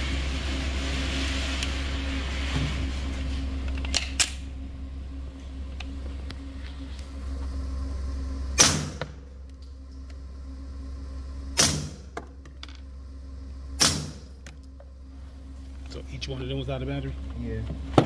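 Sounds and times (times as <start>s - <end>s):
suppressed gunshots with echo: 8.6s - 9.0s.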